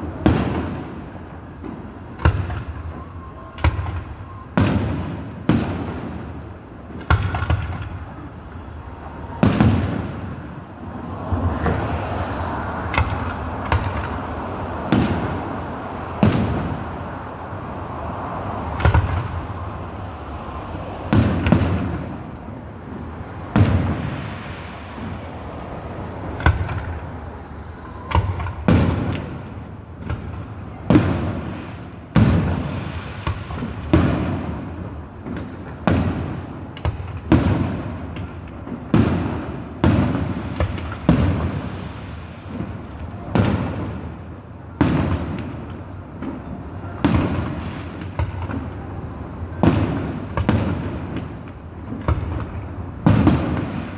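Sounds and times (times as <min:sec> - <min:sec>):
fireworks bangs with rumbling echo: 0:00.0 - 0:53.9.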